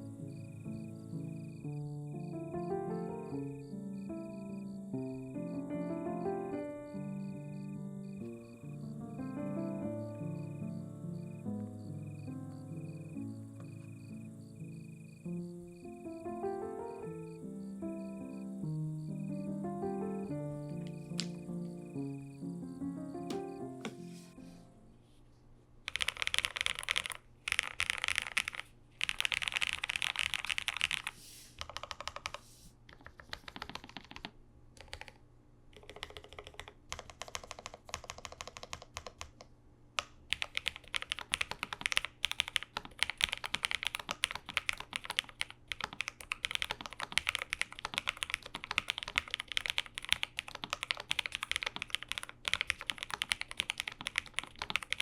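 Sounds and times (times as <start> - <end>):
keyboard key clicks: 20.8 - 21.4, 23.3 - 24.0.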